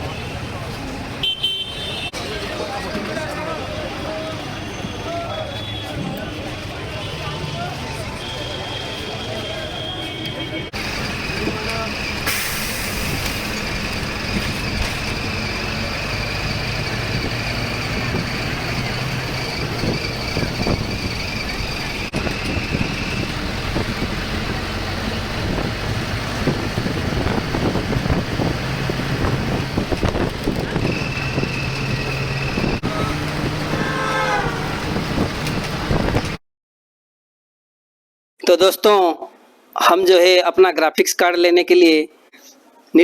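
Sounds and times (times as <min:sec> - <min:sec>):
traffic: 0:00.0 - 0:36.4
engine hum: 0:10.7 - 0:36.4.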